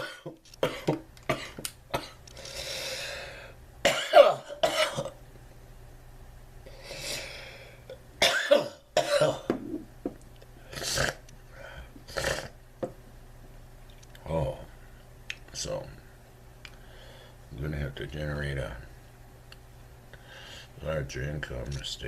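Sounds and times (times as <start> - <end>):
man coughing: 0.0 - 2.2, 3.9 - 5.2, 8.2 - 9.6
breathing: 2.3 - 3.6, 6.7 - 7.9, 11.5 - 12.0, 16.7 - 17.4, 20.1 - 20.8.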